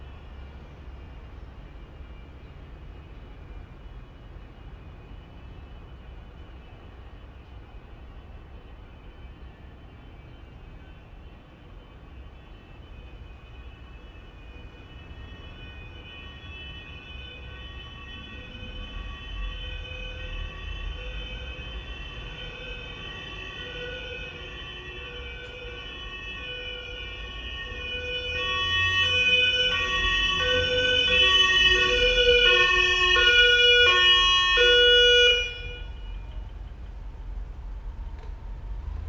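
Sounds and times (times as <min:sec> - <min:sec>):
two-tone ambulance siren: 0:00.0 - 0:39.0
vehicle engine rumble: 0:35.5 - 0:39.0.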